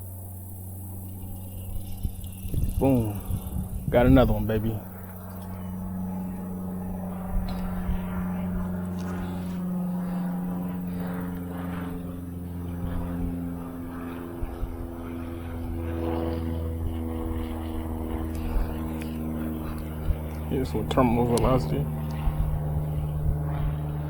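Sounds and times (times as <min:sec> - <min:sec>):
engine droning: 0:00.0 - 0:24.0
light clicks: 0:18.3 - 0:22.2.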